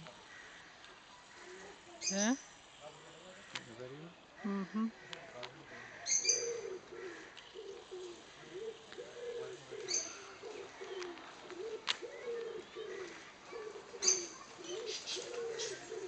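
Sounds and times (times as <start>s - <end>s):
small bird chirping: 1.6s - 2.8s, 6.1s - 6.8s, 7.4s - 16.0s
bird cooing: 6.0s - 16.0s.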